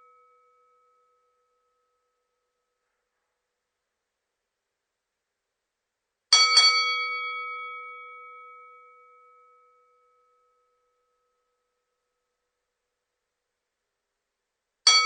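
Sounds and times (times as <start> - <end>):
boxing ring bell ringing: 6.3 - 10.8.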